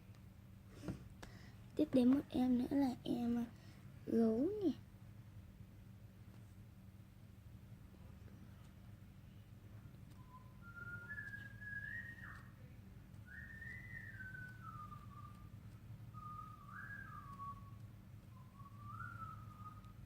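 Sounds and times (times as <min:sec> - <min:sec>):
faint steady hum: 0:00.0 - 0:20.0
person whistling a tune: 0:10.2 - 0:12.5, 0:13.2 - 0:15.5, 0:16.1 - 0:20.0.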